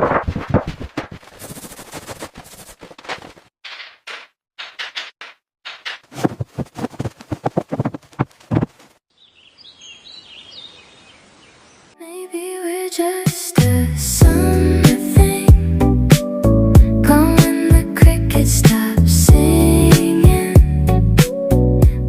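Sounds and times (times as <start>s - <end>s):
rapid hammering: 3.1s - 8.8s
faint bird chirps: 9.1s - 11.9s.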